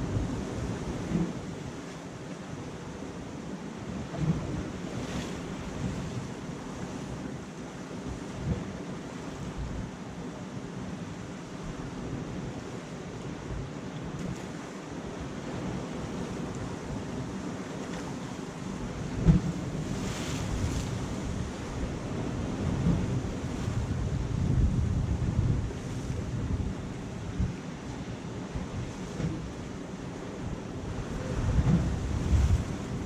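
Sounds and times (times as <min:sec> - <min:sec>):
sea surf on rocky shore: 0:00.0 - 0:33.0
wind buffeting microphone: 0:18.8 - 0:33.0.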